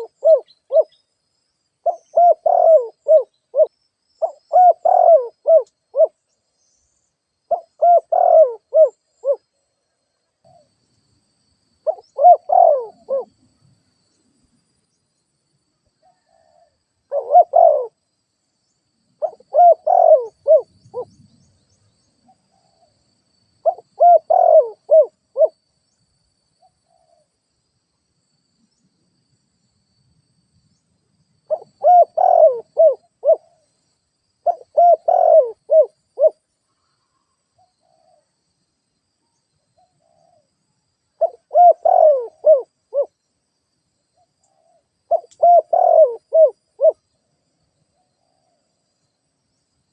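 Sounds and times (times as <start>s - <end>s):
dove cooing: 0.0s - 1.0s, 1.8s - 6.2s, 7.5s - 9.4s, 11.8s - 13.4s, 16.1s - 18.0s, 19.2s - 21.1s, 23.6s - 25.6s, 31.5s - 33.6s, 34.4s - 36.4s, 41.2s - 43.2s, 44.6s - 47.0s.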